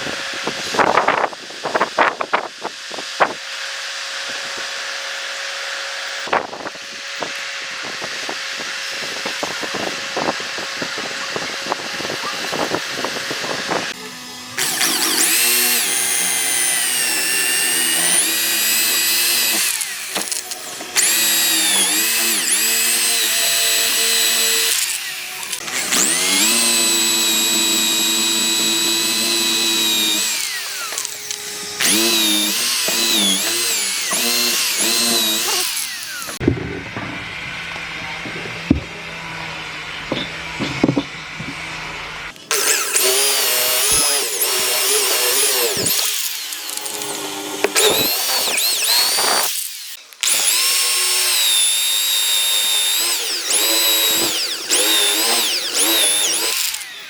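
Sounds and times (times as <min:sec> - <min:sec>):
power tool motor whining: 0:00.0 - 0:57.0.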